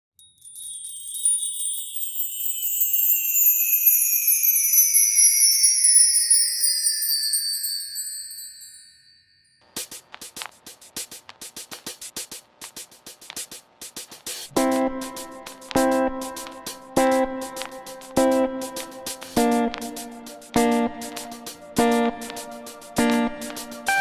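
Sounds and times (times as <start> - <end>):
sparkling chime sound effect: 0.2 - 9.6
electronic drum beat: 9.8 - 24.0.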